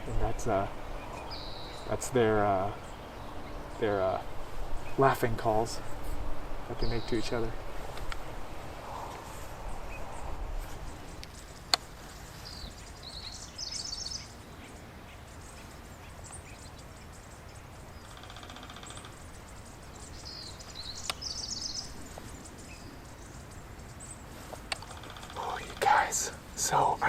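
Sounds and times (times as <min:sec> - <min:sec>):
woodpeckers chattering calls: 0:00.0 - 0:27.0.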